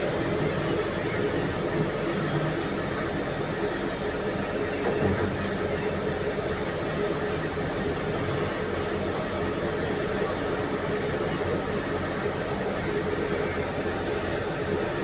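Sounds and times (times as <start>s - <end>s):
heavy diesel engines droning: 0.0s - 15.0s.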